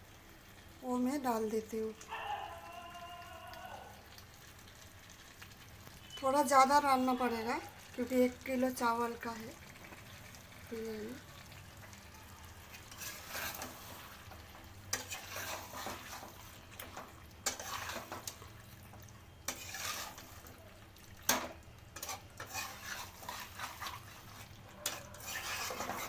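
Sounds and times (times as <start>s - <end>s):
spoon stirring in a pot: 12.6s - 26.0s.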